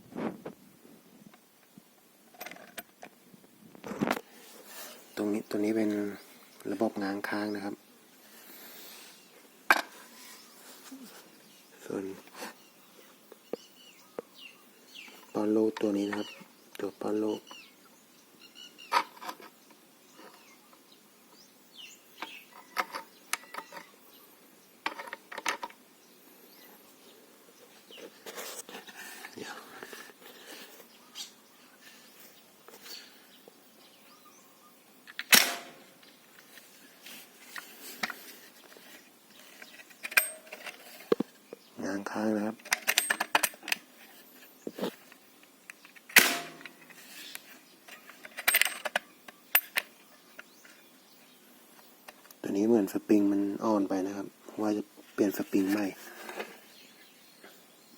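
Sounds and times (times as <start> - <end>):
air rifle mechanism clicks: 35.1 - 36.0, 45.7 - 47.4
air gun firing: 35.3 - 35.9, 46.2 - 46.6.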